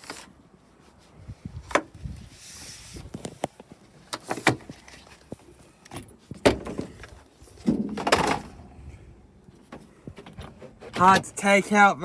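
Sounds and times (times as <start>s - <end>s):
knocks and rattles of car trim: 5.9s - 7.0s.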